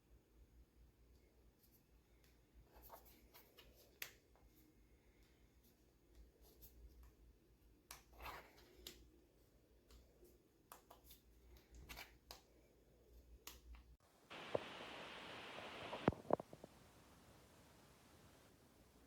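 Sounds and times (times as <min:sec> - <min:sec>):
steady hiss: 0:14.0 - 0:19.0.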